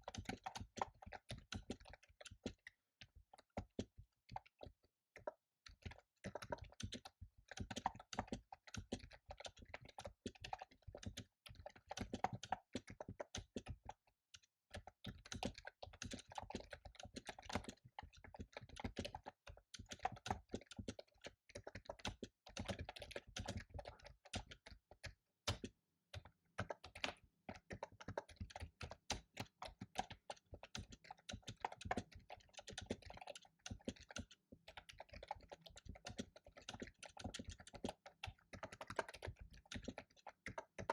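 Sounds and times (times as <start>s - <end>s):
fast typing on keyboard: 0.0s - 40.9s.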